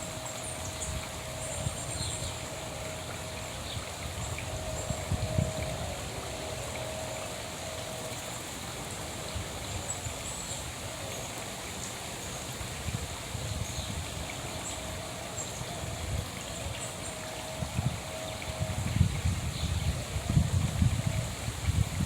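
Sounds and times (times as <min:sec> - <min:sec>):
running water trickling: 0:00.0 - 0:22.0.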